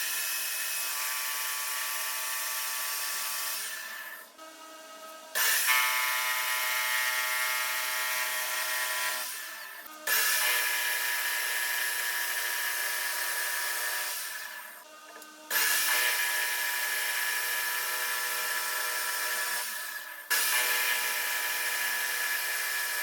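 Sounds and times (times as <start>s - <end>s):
power tool whining on metal: 0.0s - 23.0s.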